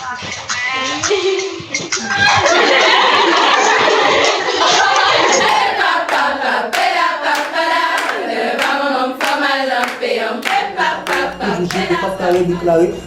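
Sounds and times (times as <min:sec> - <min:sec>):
group of voices singing: 0:03.8 - 0:13.0
rhythmic hand clapping: 0:04.8 - 0:12.6.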